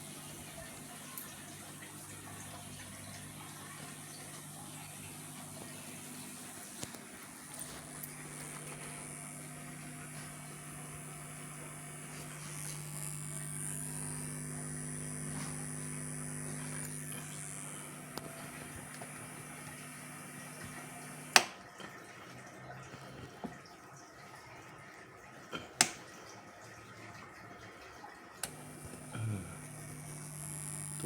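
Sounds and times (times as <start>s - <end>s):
amplifier hum with high whine: 0.0s - 21.6s, 28.4s - 31.0s.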